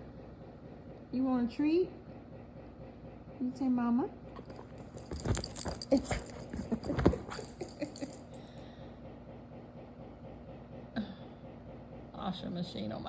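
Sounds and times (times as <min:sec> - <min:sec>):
dog claws clicking on floor: 0:04.4 - 0:08.4.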